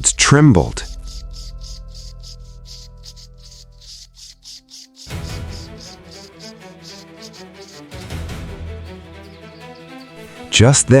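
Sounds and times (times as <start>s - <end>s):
heavy low hit: 0.0s - 4.1s
pulsing soundtrack music: 0.0s - 11.0s.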